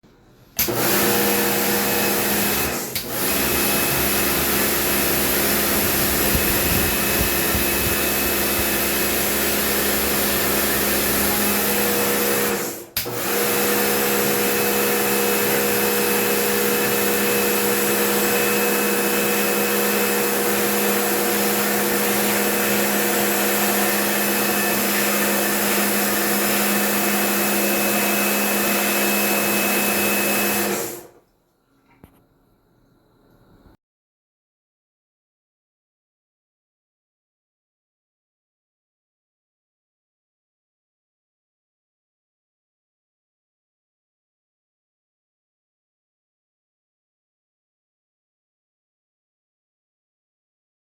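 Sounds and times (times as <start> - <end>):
cleaning machine motor hum: 0.6 - 31.2.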